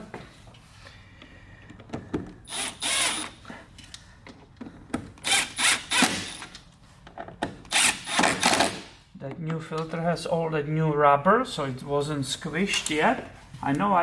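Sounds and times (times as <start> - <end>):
cordless drill driving bolts: 2.4 - 3.4, 5.2 - 6.5, 7.7 - 8.9.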